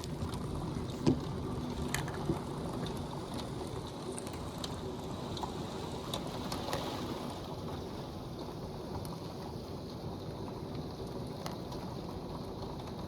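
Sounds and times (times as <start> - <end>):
raindrops ticking on surfaces: 0.0 - 6.9, 7.6 - 13.0.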